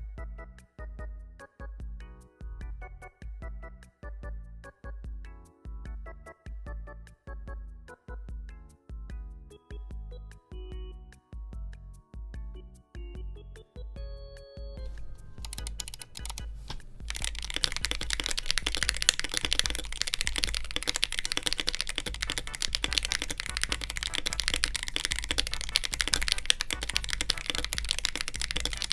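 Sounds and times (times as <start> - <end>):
mechanical keyboard typing: 14.9 - 28.9.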